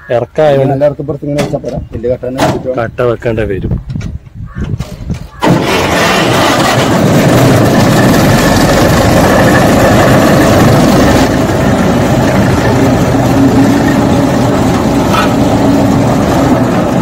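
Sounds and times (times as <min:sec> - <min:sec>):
road roller engine running: 0:05.2 - 0:17.0.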